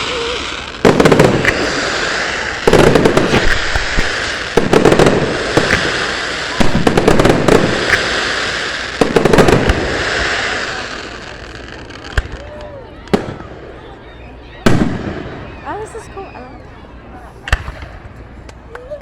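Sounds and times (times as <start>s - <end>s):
fireworks hiss: 0.0s - 12.3s
fireworks popping and banging: 0.0s - 13.5s, 17.4s - 19.0s.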